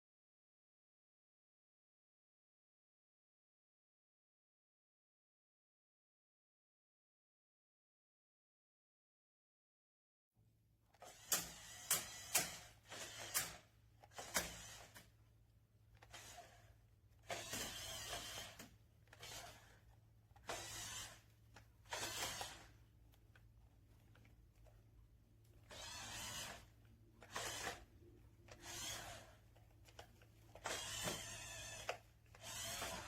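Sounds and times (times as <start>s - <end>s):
toy car motors whirring: 11.0s - 15.1s, 16.0s - 23.3s, 25.6s - 33.0s.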